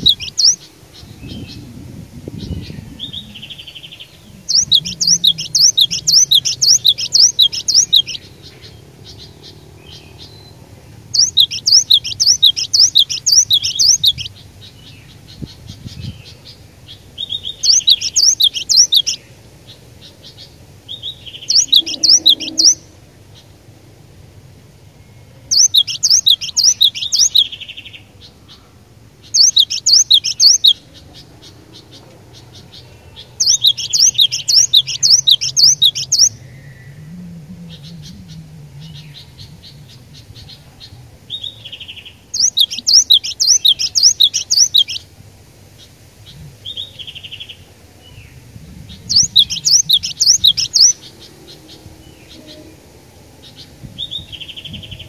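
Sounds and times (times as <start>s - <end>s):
bird singing rapid high notes: 0.0s - 1.7s, 2.3s - 15.0s, 17.2s - 19.3s, 20.9s - 23.0s, 25.5s - 27.8s, 29.2s - 30.8s, 33.3s - 37.0s, 42.2s - 45.1s, 49.0s - 52.8s
short low bird calls: 0.0s - 23.6s, 25.5s - 45.1s, 48.9s - 55.0s.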